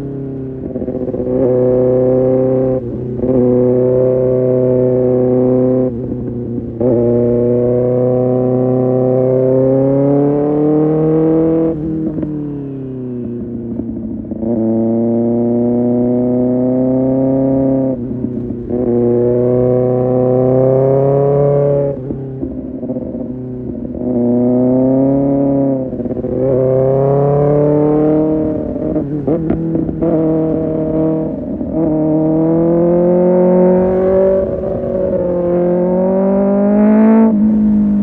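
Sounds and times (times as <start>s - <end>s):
motorcycle engine revving: 0.0s - 38.0s.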